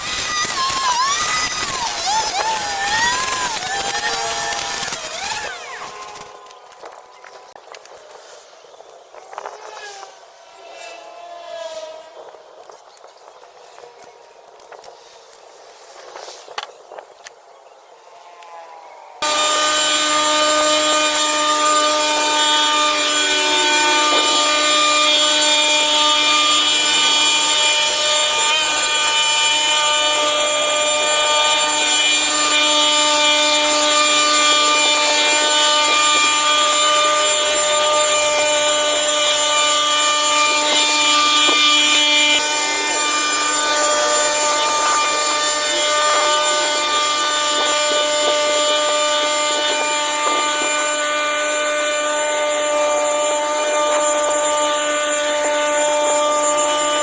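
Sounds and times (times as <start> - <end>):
small petrol engine running: 0.0 - 7.3.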